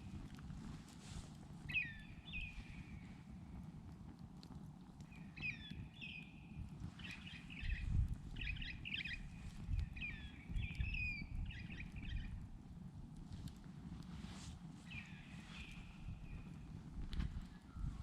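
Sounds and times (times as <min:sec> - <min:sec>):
campfire crackling and popping: 0:00.0 - 0:18.0
birds whistling calls: 0:01.7 - 0:02.7, 0:07.0 - 0:12.3.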